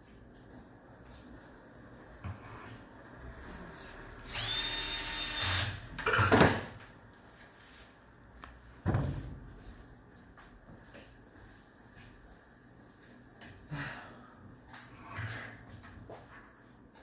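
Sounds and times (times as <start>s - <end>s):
power drill whining: 4.3s - 5.8s.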